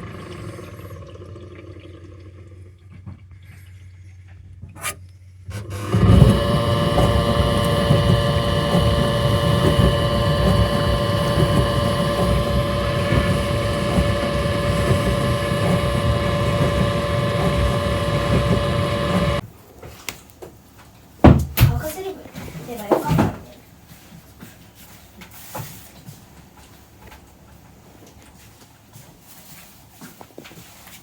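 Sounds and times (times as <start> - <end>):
dishwasher groaning hum: 0.0 - 19.4.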